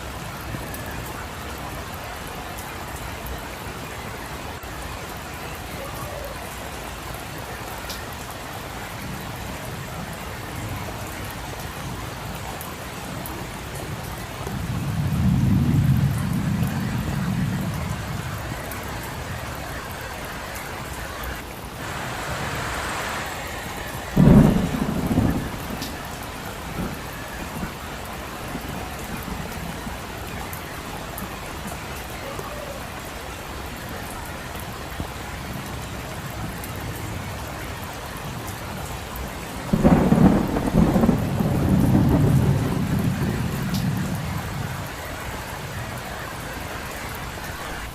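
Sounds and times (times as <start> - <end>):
steady rain falling: 0.0 - 47.9
low rumble of thunder: 14.4 - 19.7, 23.6 - 31.7, 39.6 - 45.4
sharp thunderclap: 24.0 - 27.8, 39.7 - 44.6.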